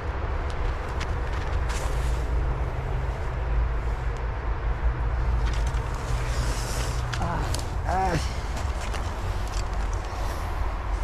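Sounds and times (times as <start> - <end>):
brush rustling: 0.5 - 4.2, 5.0 - 11.0.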